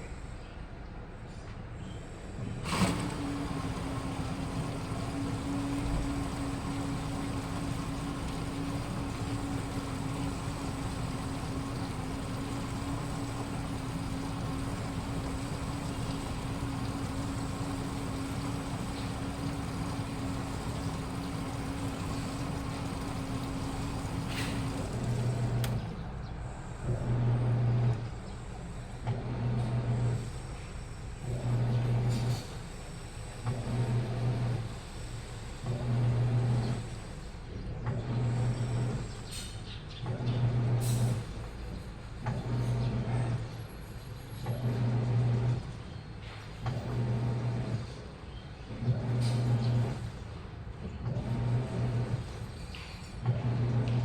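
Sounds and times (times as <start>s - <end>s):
motor humming in bursts: 2.6s - 26.3s, 46.7s - 47.9s, 51.0s - 52.5s
washing machine spinning: 2.6s - 39.3s, 40.0s - 54.0s
washing machine click: 2.7s - 26.1s.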